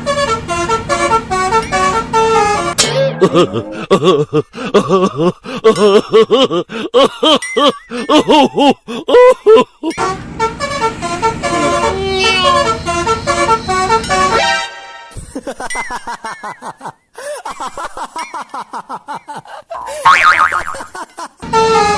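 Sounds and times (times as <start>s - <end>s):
multi-tone bus horn honking: 0.0s - 2.8s, 10.0s - 15.2s, 21.4s - 21.9s.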